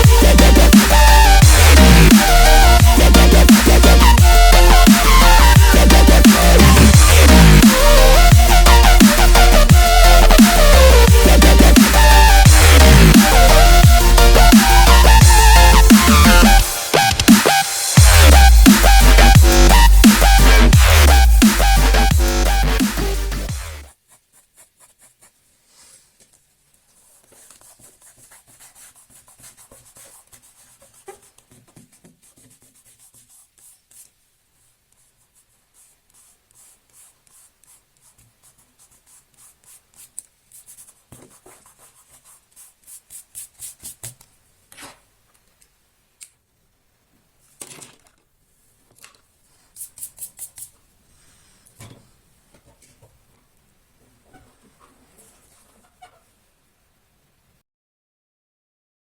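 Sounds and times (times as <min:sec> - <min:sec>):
drawing tool scratching on paper: 0:22.8 - 0:26.0, 0:27.0 - 0:34.2, 0:34.9 - 0:44.2.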